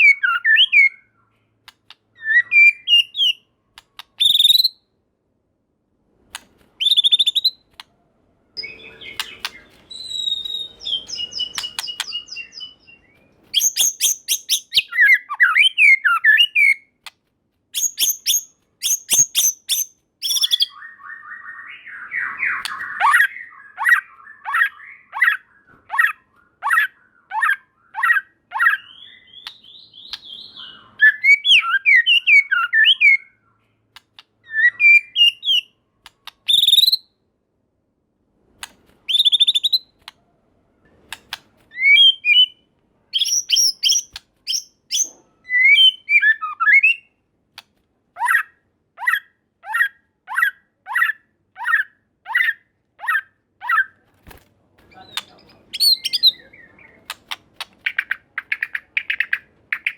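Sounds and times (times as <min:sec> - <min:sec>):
songbird singing whistles: 0:00.0 - 0:01.4, 0:02.2 - 0:04.9, 0:06.8 - 0:07.7, 0:08.5 - 0:16.9, 0:17.8 - 0:33.6, 0:34.4 - 0:37.2, 0:39.0 - 0:40.0, 0:41.7 - 0:47.2, 0:54.9 - 0:57.2.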